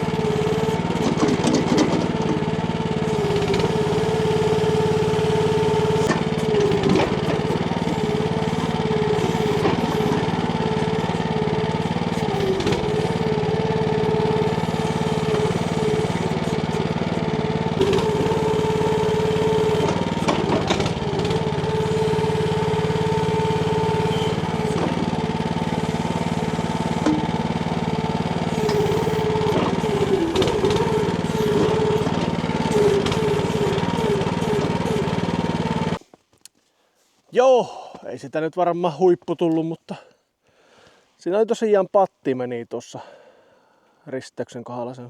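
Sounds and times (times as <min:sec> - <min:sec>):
backhoe engine running: 0:00.0 - 0:36.0
digging knocks: 0:00.0 - 0:36.0
hydraulic whine: 0:00.0 - 0:36.0.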